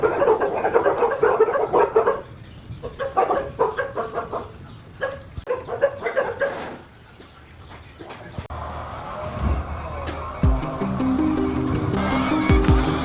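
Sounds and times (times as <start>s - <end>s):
hens clucking: 0.0s - 8.5s.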